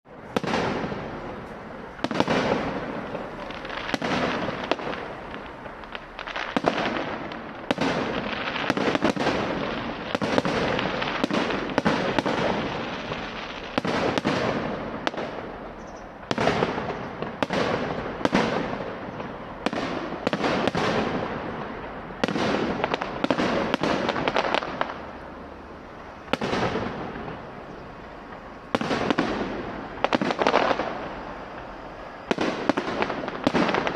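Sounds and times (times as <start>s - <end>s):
aerial firework shells bursting: 26.2s - 33.9s.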